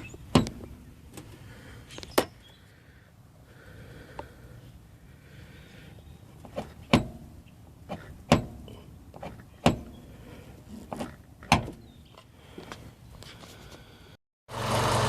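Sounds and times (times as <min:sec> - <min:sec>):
car suspension knocking: 0:00.3 - 0:00.8, 0:06.4 - 0:10.0.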